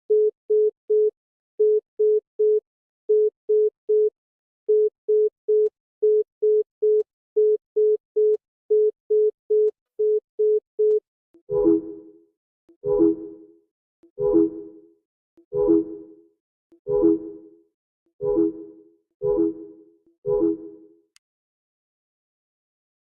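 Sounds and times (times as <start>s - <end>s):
electronic alarm beeping: 11.5s - 12.1s, 12.8s - 13.4s, 14.2s - 14.8s, 15.6s - 16.1s, 16.9s - 17.5s, 18.2s - 20.8s.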